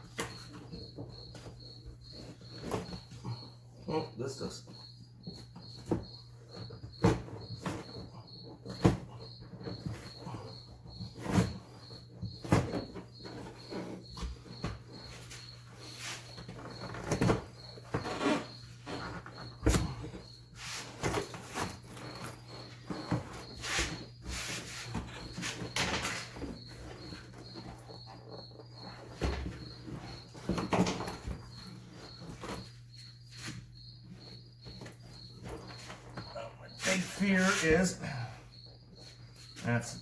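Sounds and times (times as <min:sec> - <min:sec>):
cricket chirping: 0:00.0 - 0:40.0
knocks and thumps: 0:04.7 - 0:15.6, 0:16.3 - 0:20.4, 0:21.0 - 0:33.0
carpet scraping and rustling: 0:04.8 - 0:40.0.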